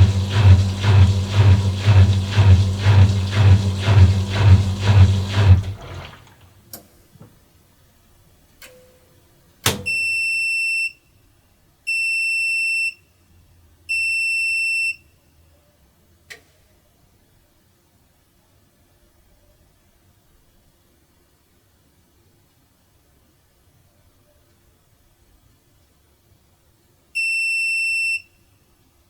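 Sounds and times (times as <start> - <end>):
washing machine drum slowing: 0.0 - 6.6
washing machine clicks and clunk: 0.0 - 6.9, 9.6 - 10.1.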